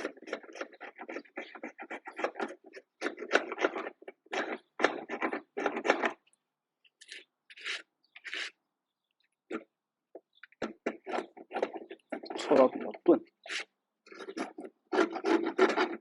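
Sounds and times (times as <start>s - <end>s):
file rasping across wood: 13.4s - 16.0s.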